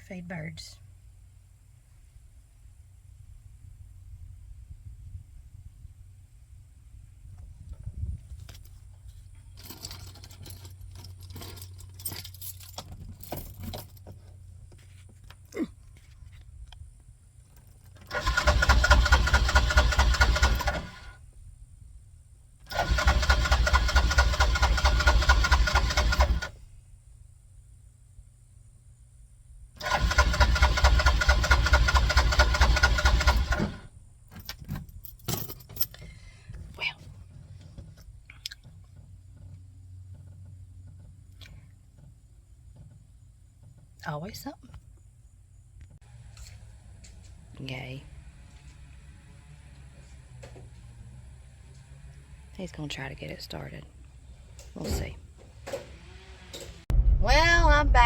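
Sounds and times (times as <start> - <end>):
keys jangling: 9.5 - 14.2, 34.3 - 36.0
engine starter cranking: 17.8 - 21.2, 22.6 - 26.6, 29.8 - 33.9
low steady hum: 56.9 - 58.0.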